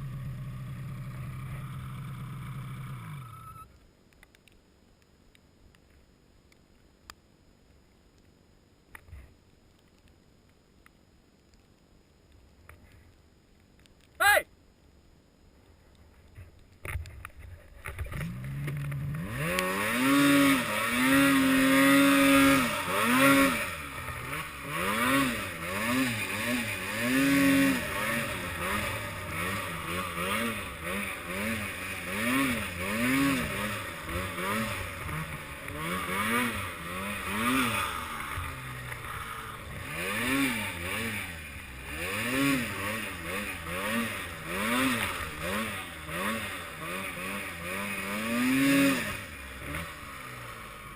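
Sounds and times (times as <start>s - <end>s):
snowmobile engine revving: 0.0s - 3.6s, 18.1s - 50.9s.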